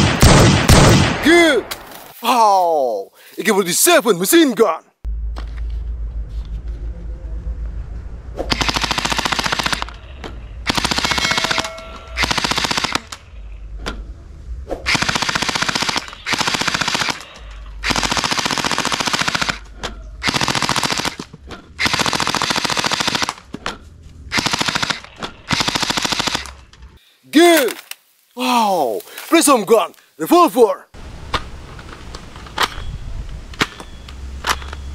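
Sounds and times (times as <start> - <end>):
toy gun machine-gun sound effect: 10.7 - 13.1.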